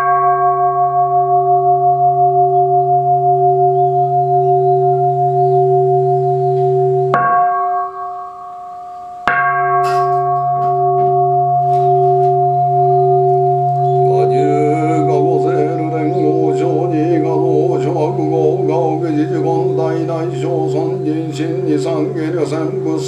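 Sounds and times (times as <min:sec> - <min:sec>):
bowl bell struck: 0:00.0 - 0:19.6
bowl bell ringing: 0:00.0 - 0:23.0
voices chanting: 0:14.0 - 0:23.0.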